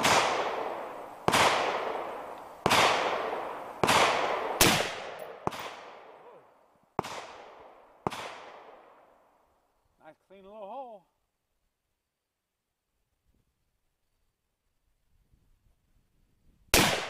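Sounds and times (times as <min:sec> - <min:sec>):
rifle shots with echo: 0:00.0 - 0:09.1, 0:16.7 - 0:17.0.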